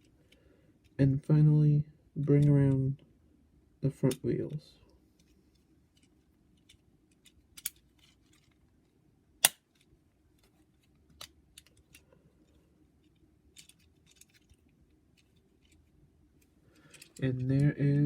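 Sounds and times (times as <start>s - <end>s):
plastic toy parts clicking: 6.0s - 8.6s, 13.0s - 14.6s
plastic snap: 9.4s - 9.6s.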